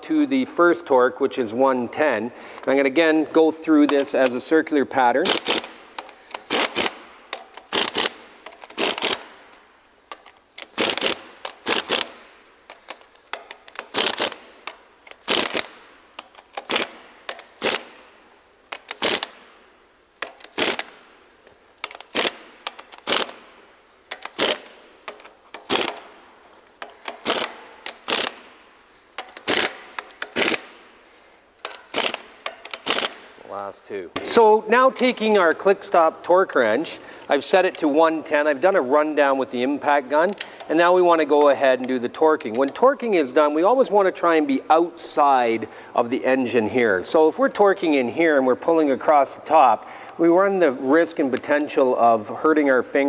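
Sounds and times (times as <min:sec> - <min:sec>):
impact gun rattling bursts: 0:05.2 - 0:09.5, 0:10.6 - 0:18.2, 0:18.8 - 0:19.6, 0:20.2 - 0:21.2, 0:21.8 - 0:28.6, 0:29.2 - 0:30.9, 0:31.6 - 0:33.4.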